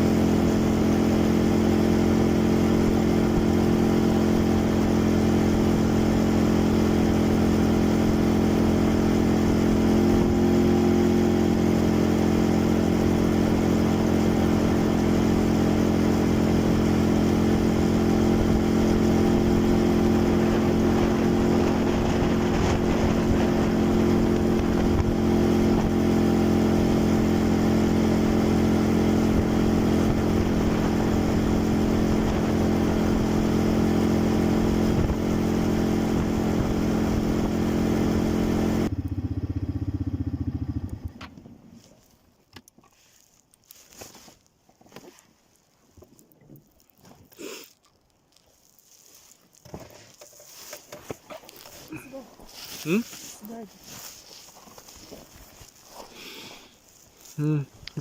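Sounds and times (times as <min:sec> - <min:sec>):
quad bike engine running: 0:00.0 - 0:41.7.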